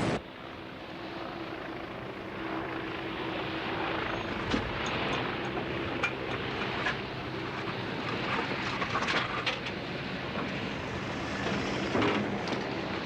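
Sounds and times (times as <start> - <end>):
engine drone: 0.0 - 0.5.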